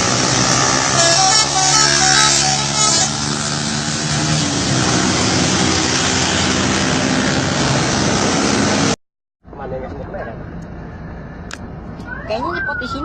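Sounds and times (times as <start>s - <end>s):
musical bus horn: 0.0s - 3.8s
bus engine running: 0.0s - 12.6s.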